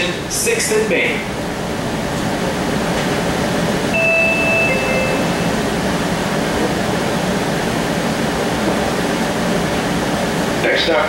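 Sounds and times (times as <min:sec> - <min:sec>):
streetcar running and ventilation: 0:00.0 - 0:11.0
two-note falling chime: 0:04.0 - 0:05.7.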